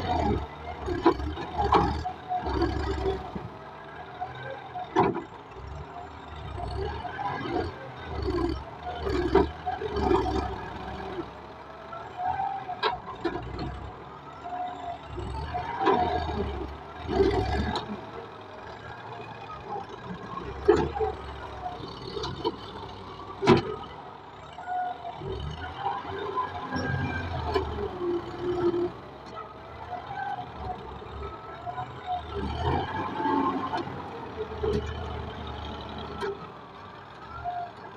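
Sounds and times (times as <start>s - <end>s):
tractor engine running under load: 0.0s - 37.9s.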